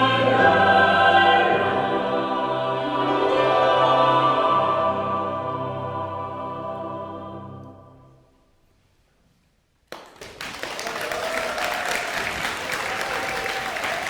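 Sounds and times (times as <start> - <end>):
choir singing final chord: 0.0 - 8.3
audience applause: 9.9 - 14.0.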